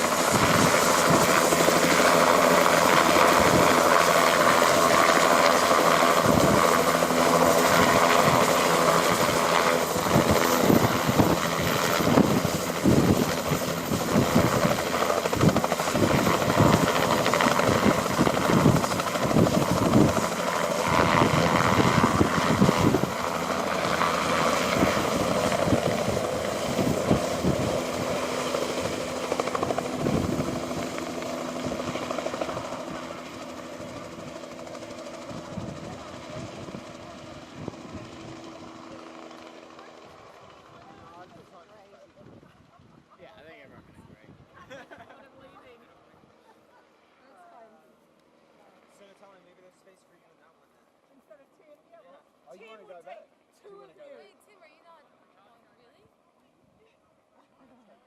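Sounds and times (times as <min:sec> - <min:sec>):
helicopter rotor beat: 0:00.0 - 0:43.6.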